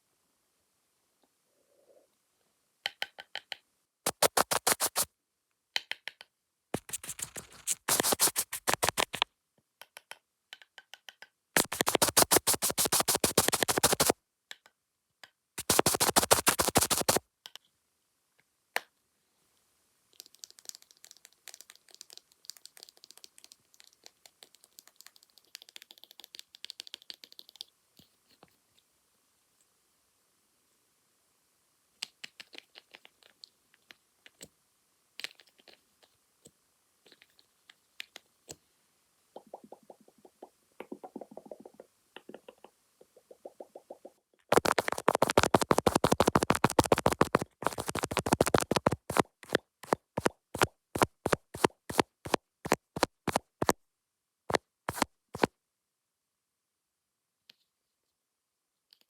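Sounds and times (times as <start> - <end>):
rapid scratching and brushing: 4.1 - 5.1, 6.8 - 9.2, 11.6 - 14.2, 15.6 - 17.2, 43.2 - 53.8, 54.9 - 55.5
rapid tapping on a lens: 4.1 - 5.1, 6.8 - 10.1, 10.8 - 14.2, 15.6 - 17.2, 39.4 - 53.8, 54.5 - 55.5.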